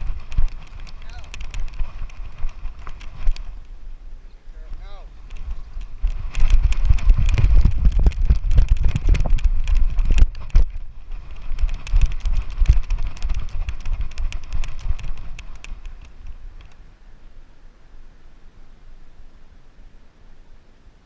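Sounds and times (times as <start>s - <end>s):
dog running footfalls: 0.0s - 3.5s.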